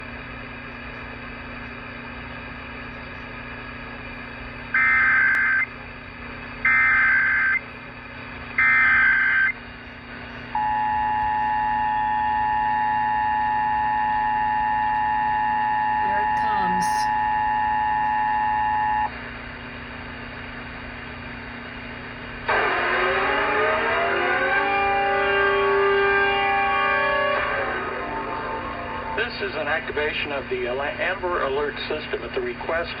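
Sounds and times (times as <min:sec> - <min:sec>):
radio hiss and hum: 0:00.0 - 0:19.1, 0:21.2 - 0:25.6, 0:27.5 - 0:33.0
data tone bursts: 0:16.0 - 0:19.1.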